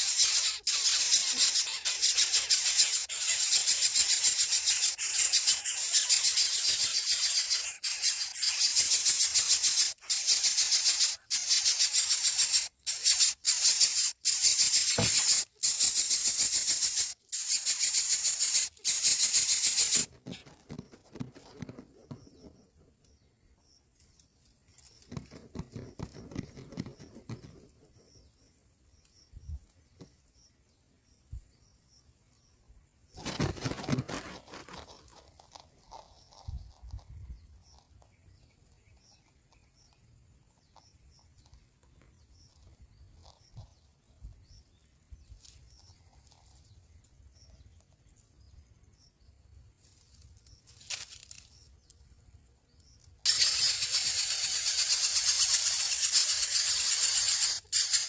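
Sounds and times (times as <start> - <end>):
soft rustling and scraping: 33.2 - 38.1
high-pitched rasping buzz: 53.3 - 58.0.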